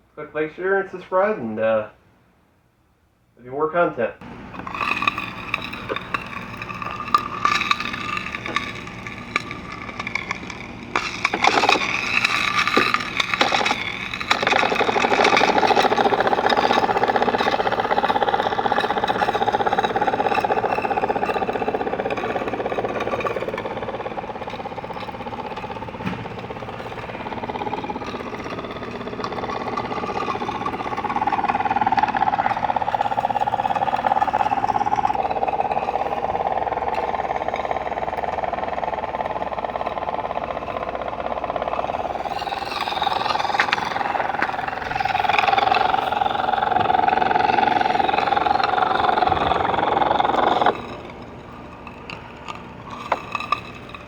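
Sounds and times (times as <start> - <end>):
small steam engine running: 4.2 - 54.0.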